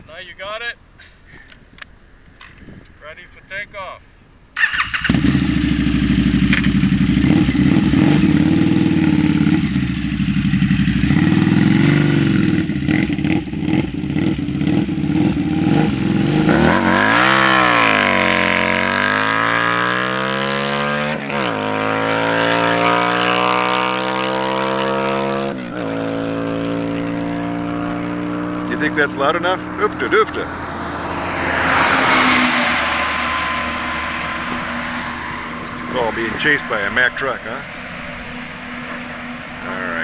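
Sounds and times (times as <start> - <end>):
motorcycle engine accelerating: 4.6 - 40.0.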